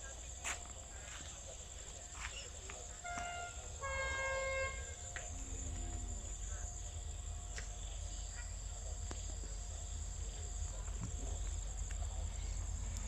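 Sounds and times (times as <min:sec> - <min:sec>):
high insect drone: 0:00.0 - 0:13.0
distant train horn: 0:02.9 - 0:07.4.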